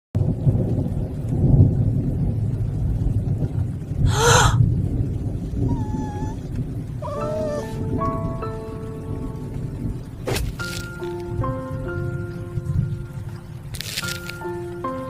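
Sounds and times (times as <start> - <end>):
rain: 0.2 - 15.0
thunder rumble: 0.2 - 15.0
breathy gasp: 4.1 - 4.6.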